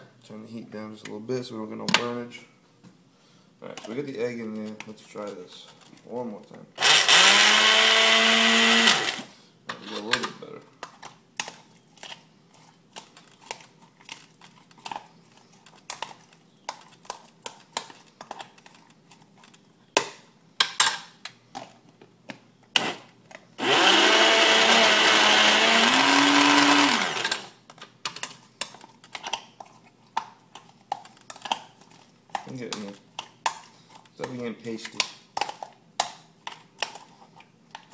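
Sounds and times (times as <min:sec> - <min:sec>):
blender running: 0:06.8 - 0:09.3, 0:23.6 - 0:27.6.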